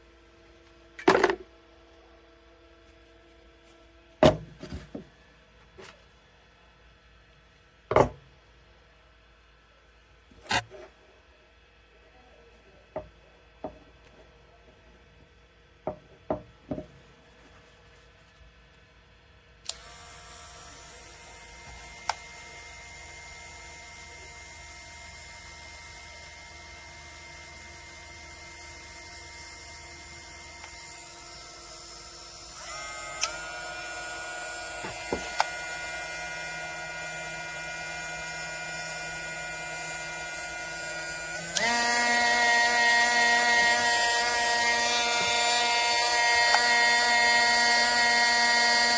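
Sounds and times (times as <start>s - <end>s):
tool handling knocks and clicks: 7.9s - 8.2s
rotary tool high whine: 19.7s - 48.9s.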